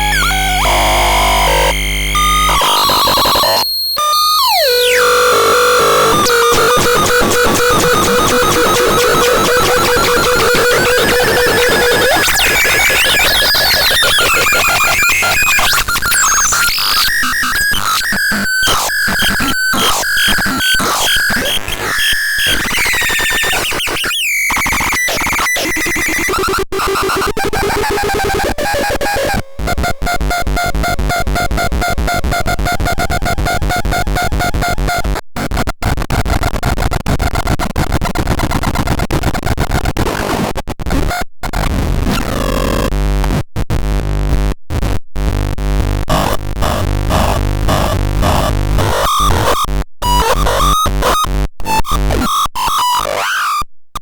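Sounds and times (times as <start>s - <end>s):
fast pulsing synthesizer buzz: 0.0s - 16.5s
harsh synthesizer sounds: 0.0s - 21.8s.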